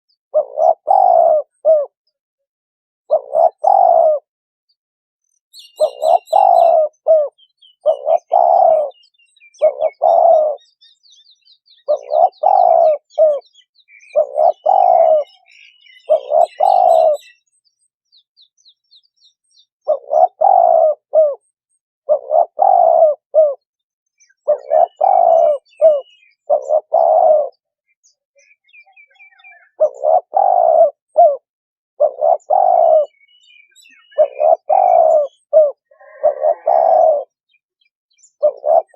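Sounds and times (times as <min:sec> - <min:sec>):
small birds chirping: 0:00.1 - 0:02.2, 0:03.1 - 0:04.3, 0:05.2 - 0:38.9
dove cooing: 0:00.3 - 0:02.0, 0:03.1 - 0:04.3, 0:05.6 - 0:10.7, 0:11.7 - 0:17.4, 0:19.8 - 0:23.6, 0:24.4 - 0:27.7, 0:29.0 - 0:37.4, 0:38.3 - 0:38.9.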